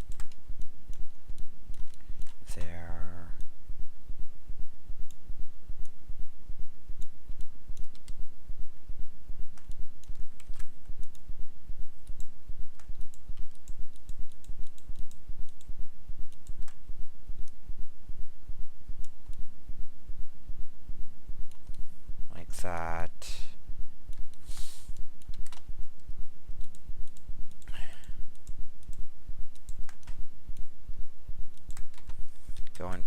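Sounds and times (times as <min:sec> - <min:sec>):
computer mouse clicks: 0:00.0 - 0:02.8, 0:07.0 - 0:08.2, 0:09.5 - 0:11.2, 0:12.0 - 0:15.7, 0:16.3 - 0:16.8, 0:21.4 - 0:21.9, 0:24.1 - 0:30.7, 0:31.5 - 0:32.8
pulsing low hum: 0:00.0 - 0:33.0.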